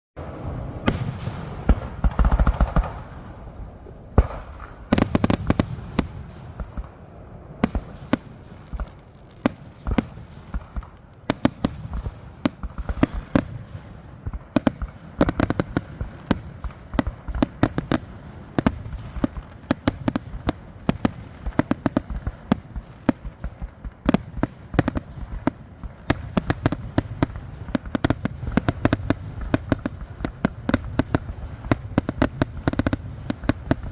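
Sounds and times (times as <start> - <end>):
fireworks booms: 0.2 - 33.9
fireworks cracking and popping: 0.8 - 3.3, 4.1 - 7.0, 7.6 - 33.9.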